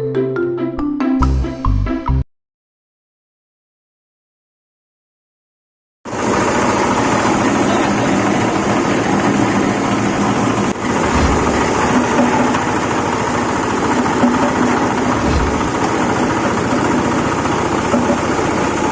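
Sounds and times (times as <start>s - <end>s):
grinding machine pulsing: 6.1s - 18.9s.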